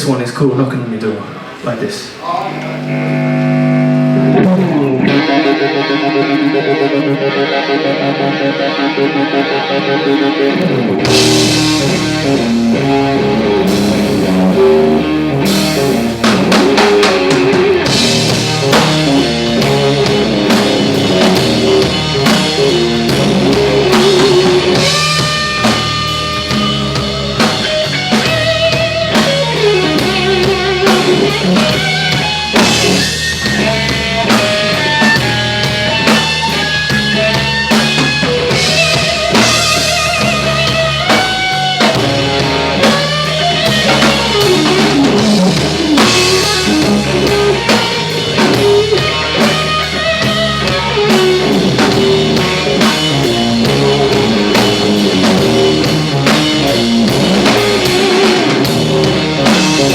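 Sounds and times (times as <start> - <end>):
blues rock band playing: 1.2 - 59.9
held wavering melody notes: 2.1 - 6.8.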